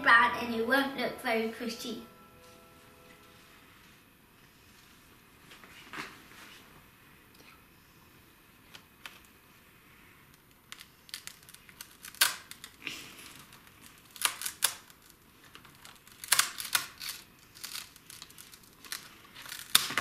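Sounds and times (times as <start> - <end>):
leaf crinkling: 10.3 - 20.0.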